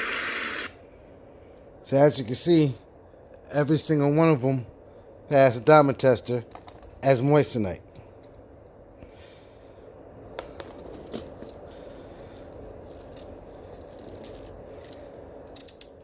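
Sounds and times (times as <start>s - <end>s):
low background hum: 0.0s - 16.0s
handcuff chain clicks and rattles: 10.6s - 16.0s.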